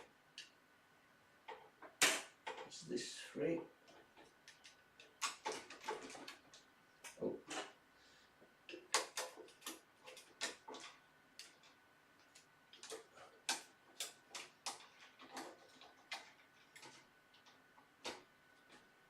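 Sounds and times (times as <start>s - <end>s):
plastic and metal parts clicking: 3.9s - 7.7s, 8.7s - 18.8s.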